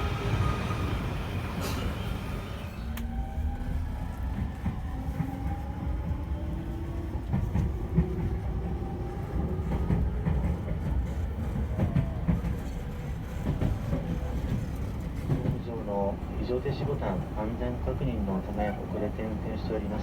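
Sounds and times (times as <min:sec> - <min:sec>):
train rumble inside carriage: 0:00.0 - 0:20.0.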